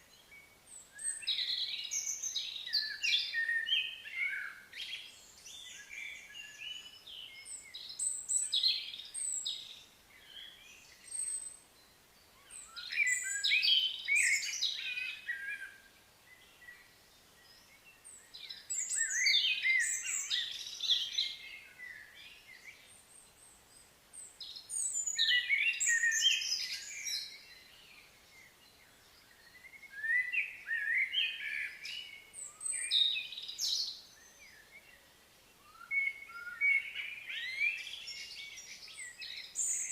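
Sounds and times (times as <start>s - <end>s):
songbird chirping and whistling: 12.4s - 15.8s, 18.2s - 22.9s, 24.4s - 34.9s, 35.6s - 39.9s.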